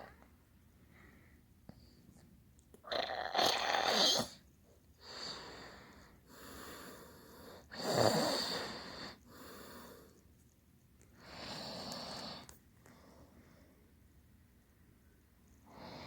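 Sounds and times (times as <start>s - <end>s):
soft breathing: 0.0s - 2.3s, 5.0s - 7.8s, 8.5s - 10.3s, 11.1s - 14.0s.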